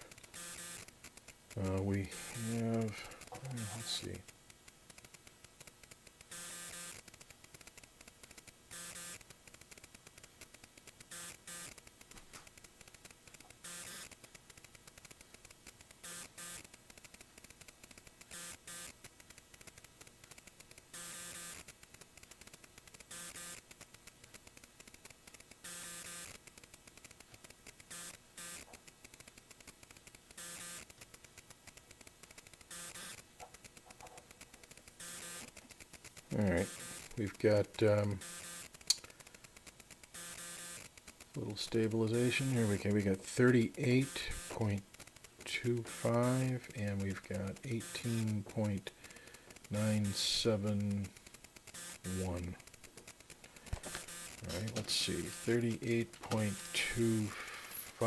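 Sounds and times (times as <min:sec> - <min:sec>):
buzzing static bursts: 0:00.0 - 0:58.0
faint steady hiss: 0:00.0 - 0:58.0.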